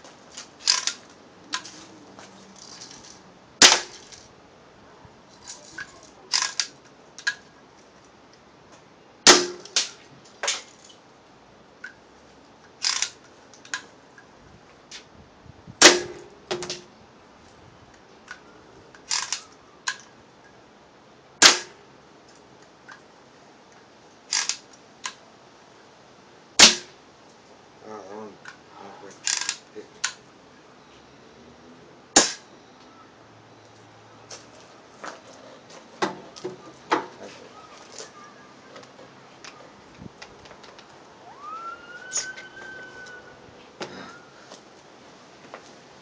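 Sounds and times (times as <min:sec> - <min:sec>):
gun clicks: 0:00.6 - 0:01.7, 0:12.8 - 0:13.9, 0:19.0 - 0:20.1, 0:24.3 - 0:25.2
bb gun shots: 0:03.6 - 0:04.1, 0:09.3 - 0:10.0, 0:15.8 - 0:16.8, 0:21.4 - 0:21.8, 0:26.6 - 0:26.9, 0:32.2 - 0:32.4.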